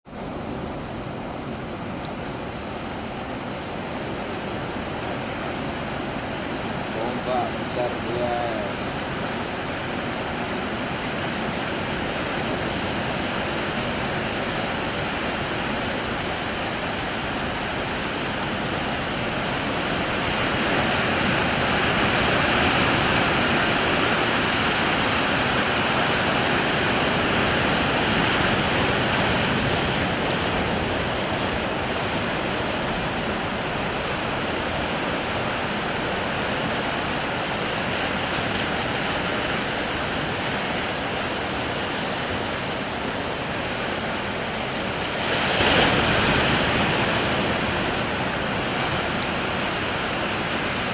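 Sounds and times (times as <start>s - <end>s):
surf breaking: 43.6s - 50.9s.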